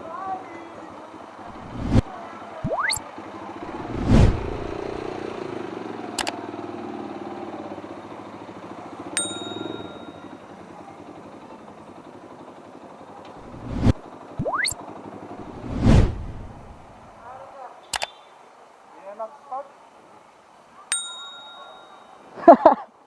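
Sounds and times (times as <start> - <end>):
motorcycle engine running: 3.2 - 14.0
bright ding: 9.2 - 10.4, 20.9 - 22.2.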